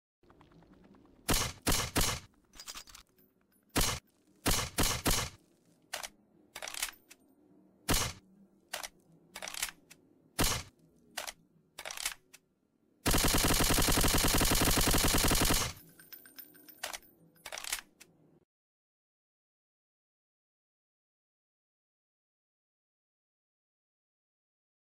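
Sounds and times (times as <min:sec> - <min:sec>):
machine pistol firing: 0:01.3 - 0:02.3, 0:03.8 - 0:05.4, 0:07.9 - 0:08.2, 0:10.4 - 0:10.7, 0:13.1 - 0:15.8.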